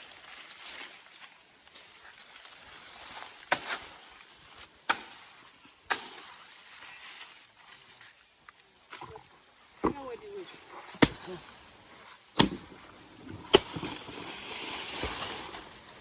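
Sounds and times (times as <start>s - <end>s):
faint outdoor hiss: 0.0s - 16.0s.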